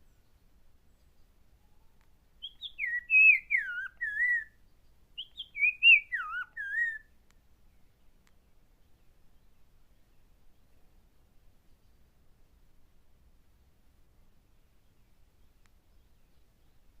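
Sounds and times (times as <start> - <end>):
bird whistling warbling phrase: 2.6 - 4.5, 5.2 - 7.0.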